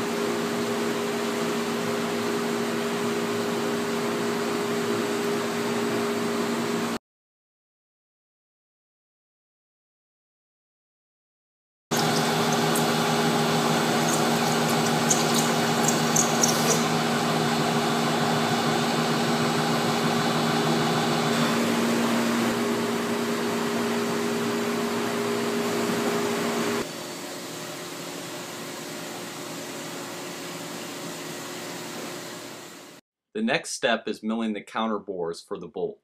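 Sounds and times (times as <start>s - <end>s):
machining equipment humming: 11.9s - 26.9s.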